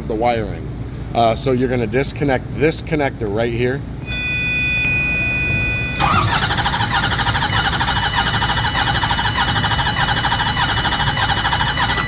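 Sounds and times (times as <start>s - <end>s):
diesel engine cranking unevenly: 6.0s - 12.0s.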